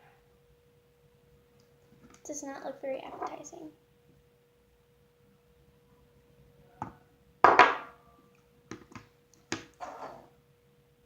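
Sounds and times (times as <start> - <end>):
faint steady hum: 0.0 - 11.0
hard objects knocking on tabletop: 6.8 - 7.9.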